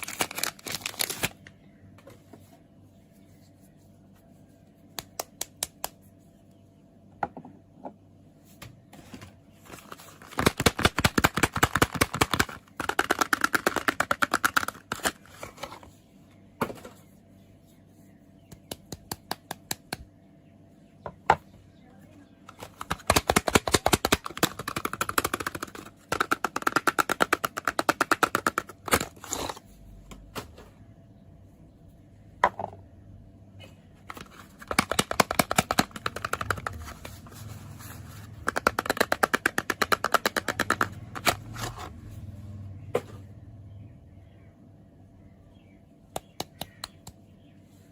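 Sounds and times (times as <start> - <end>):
packaging crinkling: 0.0 - 1.5.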